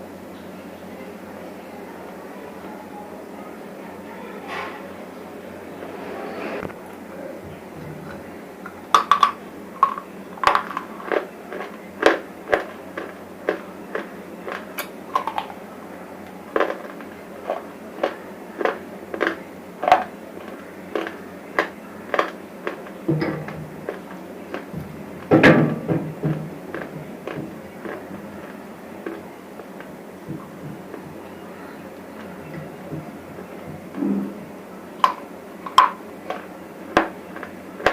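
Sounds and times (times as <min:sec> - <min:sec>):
crunching chips between teeth: 0:09.0 - 0:15.6, 0:16.4 - 0:23.0, 0:26.7 - 0:29.9.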